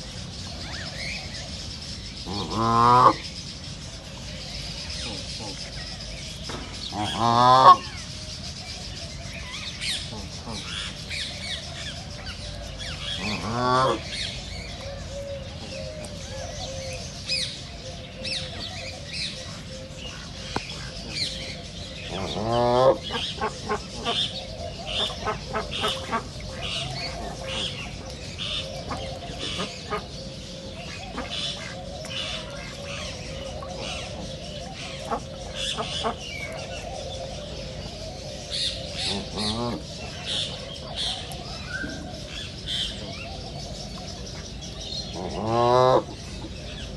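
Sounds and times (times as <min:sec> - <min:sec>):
small birds chirping: 0:00.0 - 0:46.9
ducks calling: 0:02.2 - 0:03.3, 0:06.5 - 0:08.0, 0:13.0 - 0:14.2, 0:19.3 - 0:43.2.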